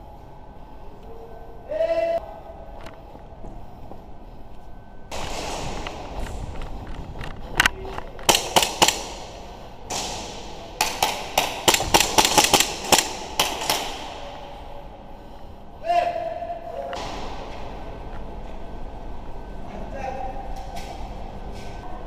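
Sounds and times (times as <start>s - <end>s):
airsoft gun shots: 5.1s - 6.3s, 8.3s - 14.6s.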